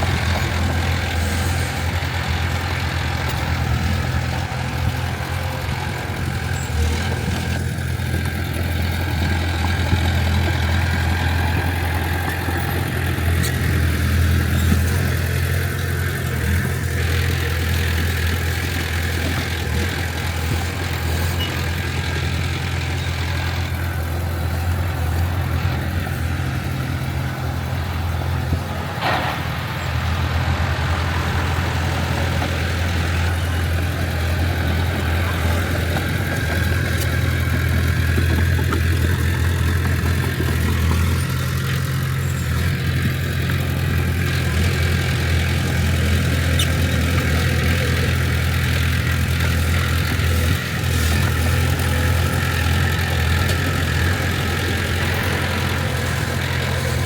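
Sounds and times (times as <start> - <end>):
diesel engine drone: 0.0 - 57.0
metal clank: 29.0 - 29.9.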